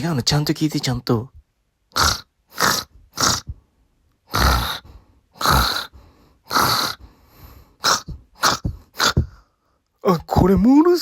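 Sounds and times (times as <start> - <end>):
man snoring: 2.0 - 3.6, 4.3 - 7.1, 7.8 - 9.4.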